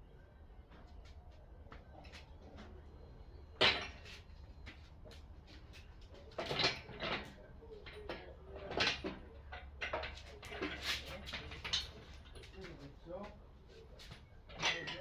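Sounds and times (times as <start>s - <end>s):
tools clattering and knocking: 3.6s - 13.4s, 14.0s - 15.0s.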